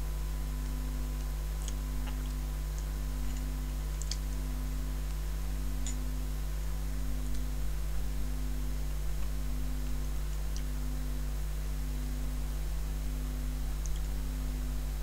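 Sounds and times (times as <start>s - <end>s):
low electrical hum: 0.0s - 15.0s
faint light ticks: 0.6s - 4.4s, 13.8s - 14.2s.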